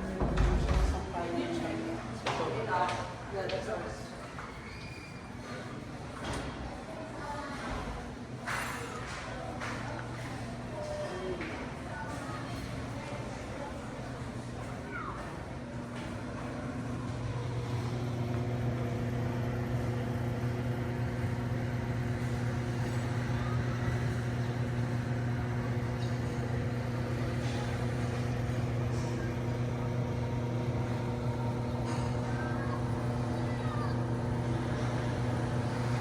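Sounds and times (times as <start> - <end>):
motor humming: 16.6 - 36.0.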